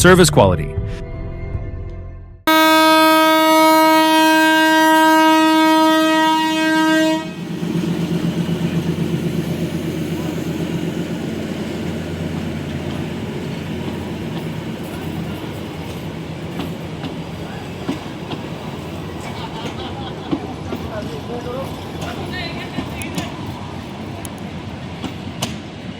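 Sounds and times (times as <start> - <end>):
train whistle: 2.5 - 7.8
train running rhythmic beat: 2.5 - 25.9.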